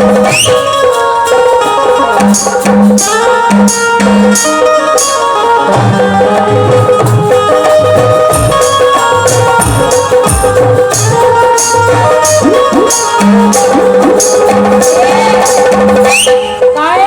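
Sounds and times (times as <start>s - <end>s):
sustained instrumental melody: 0.0s - 16.8s
high percussion strokes: 0.0s - 17.0s
drum beat: 5.8s - 17.0s.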